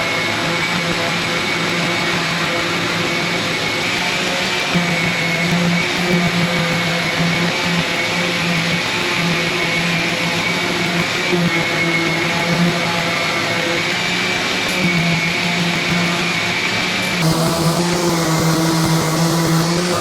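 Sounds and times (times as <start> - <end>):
guitar music: 17.2 - 20.0
power tool running: 17.2 - 20.0.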